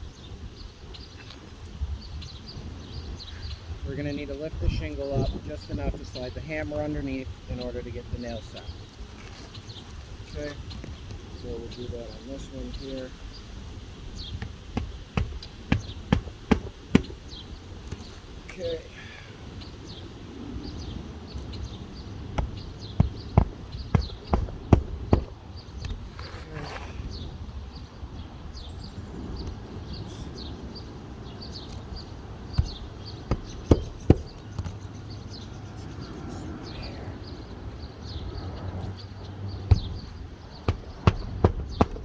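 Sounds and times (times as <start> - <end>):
hammer striking nails: 14.4 - 18.2, 22.4 - 25.4, 32.6 - 34.7, 39.7 - 42.0.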